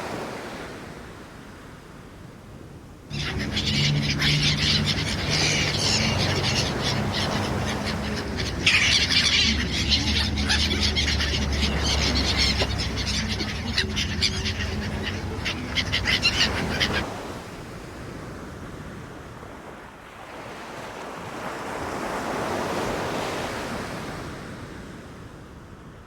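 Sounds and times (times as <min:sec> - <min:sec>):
birds squawking: 0:03.1 - 0:17.0.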